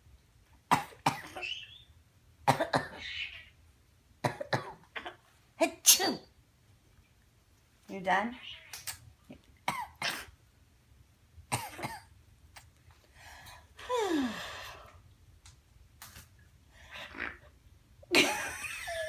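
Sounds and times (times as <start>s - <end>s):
pet coughing: 0.7s - 1.5s, 2.5s - 3.1s, 9.7s - 10.4s, 11.5s - 12.1s.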